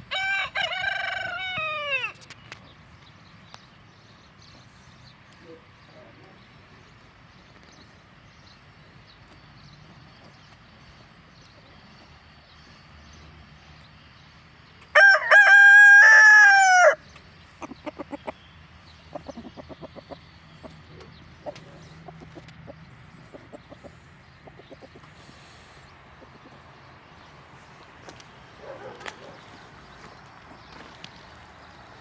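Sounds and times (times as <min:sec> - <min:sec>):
rooster crowing: 0:00.1 - 0:02.1, 0:14.9 - 0:17.0
chickens clucking: 0:17.4 - 0:31.2.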